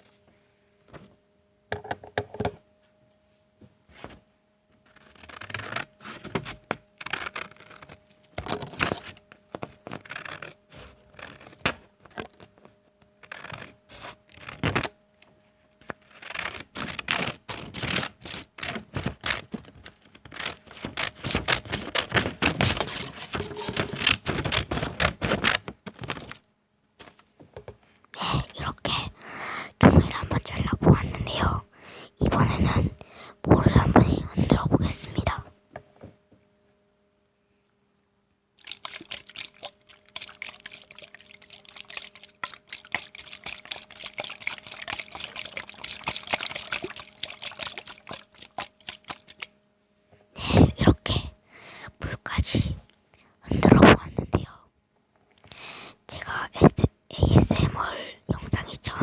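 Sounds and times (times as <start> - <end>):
paper rustling: 15.8 - 26.4
scissors snipping paper: 16.1 - 26.3.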